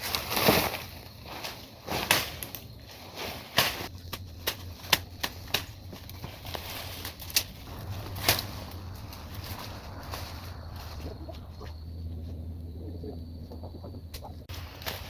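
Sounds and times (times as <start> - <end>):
dry sticks snapping: 3.6 - 8.5.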